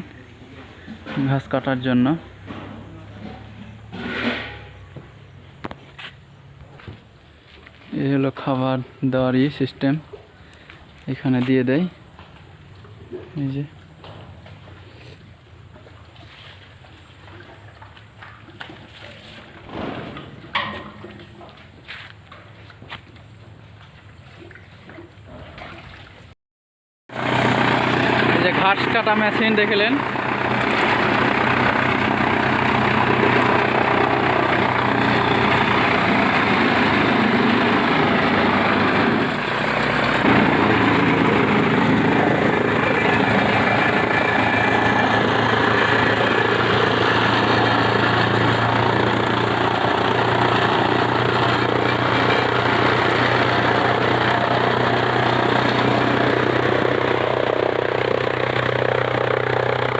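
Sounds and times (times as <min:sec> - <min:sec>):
chaff cutter machine droning: 0:27.1 - 0:59.9.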